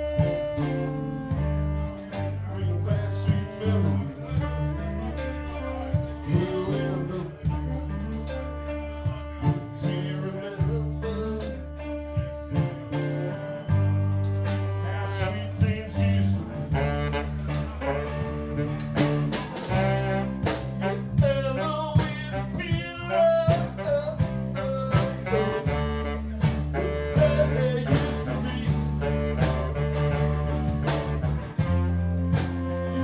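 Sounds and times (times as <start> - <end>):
blues band playing: 0.0 - 33.0.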